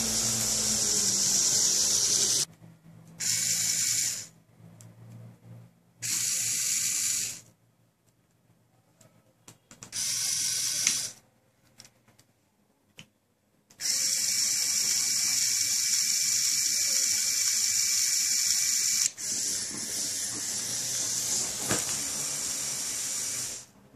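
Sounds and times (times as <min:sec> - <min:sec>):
small electric motor whirring: 0:00.0 - 0:02.5, 0:03.2 - 0:04.3, 0:06.0 - 0:07.5, 0:10.0 - 0:11.2, 0:13.8 - 0:23.7.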